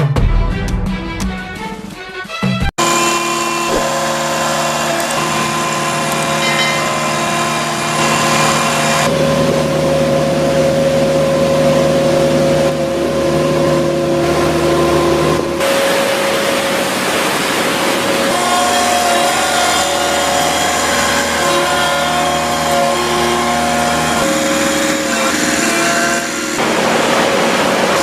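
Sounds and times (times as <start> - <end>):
whining tone: 2.8 - 9.3, 18.2 - 28.0
heavy machinery engines running: 2.8 - 28.0.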